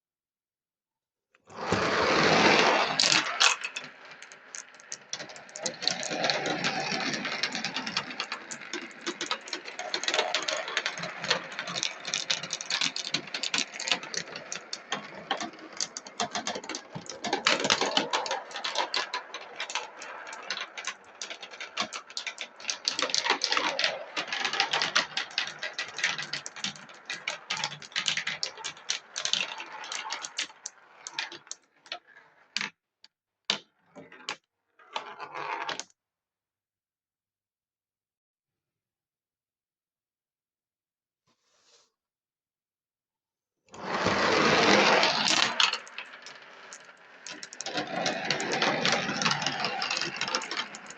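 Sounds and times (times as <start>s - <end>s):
glass marbles clattering down track: 2.4s - 32.0s, 43.9s - 50.9s.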